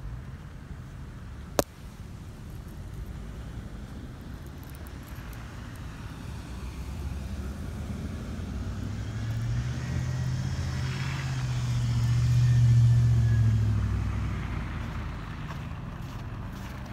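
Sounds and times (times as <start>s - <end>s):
vehicle passing by: 4.6s - 16.9s.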